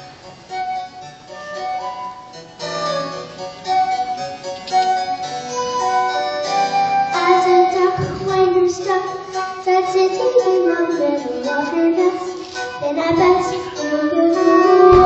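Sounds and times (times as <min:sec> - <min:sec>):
musical theatre accompaniment: 0:00.0 - 0:15.0
young girl singing: 0:07.1 - 0:15.0.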